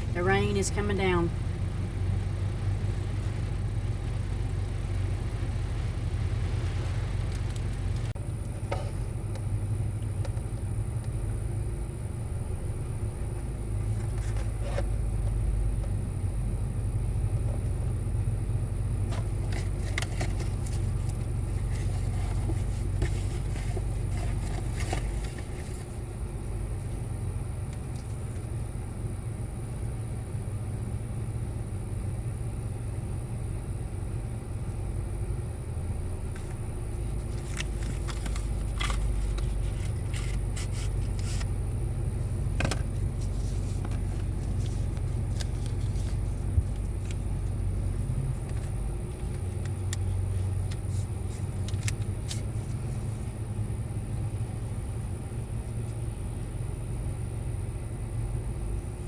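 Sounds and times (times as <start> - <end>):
low rumble inside a car: 0.0 - 59.0
heavy rain: 2.9 - 8.1.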